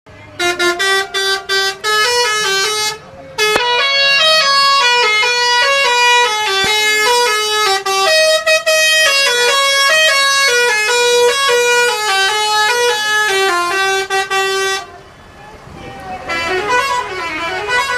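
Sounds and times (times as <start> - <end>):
bus air horn playing a tune: 0.2 - 15.2, 16.2 - 17.9.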